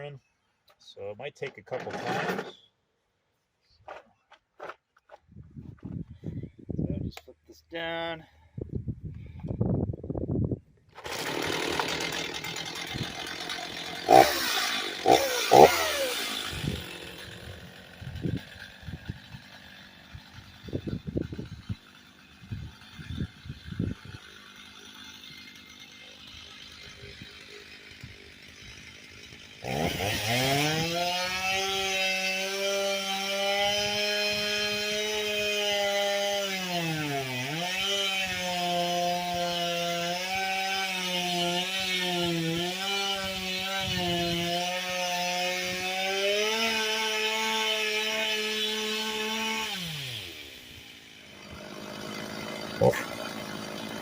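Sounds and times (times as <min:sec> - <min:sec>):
chainsaw engine revving: 0:01.8 - 0:02.6, 0:11.0 - 0:54.0.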